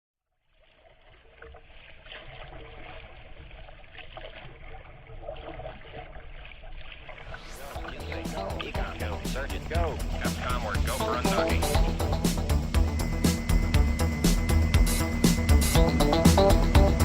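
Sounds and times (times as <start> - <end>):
lake water noise: 0.5 - 17.0
faint steady hum: 7.6 - 17.0
low rumble: 7.6 - 17.0.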